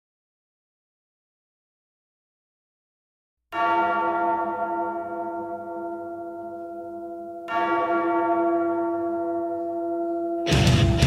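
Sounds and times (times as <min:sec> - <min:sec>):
deep bell ringing: 0:03.6 - 0:11.0
heavy music track: 0:10.5 - 0:11.0.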